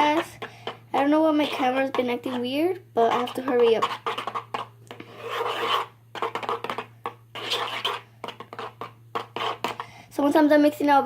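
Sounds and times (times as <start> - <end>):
utensil scraping in container: 1.4 - 9.8.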